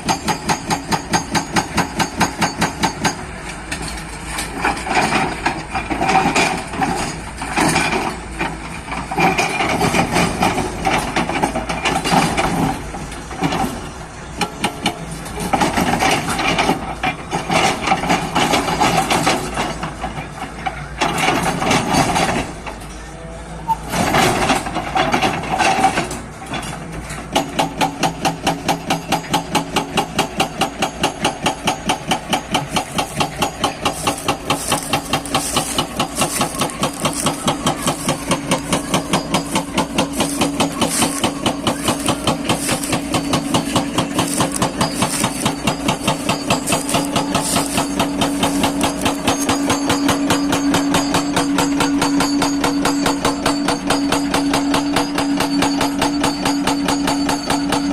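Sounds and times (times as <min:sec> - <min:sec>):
hydraulic breaker hammering: 0:00.0 - 0:12.8, 0:27.3 - 0:57.9
excavator engine running: 0:00.0 - 0:57.9.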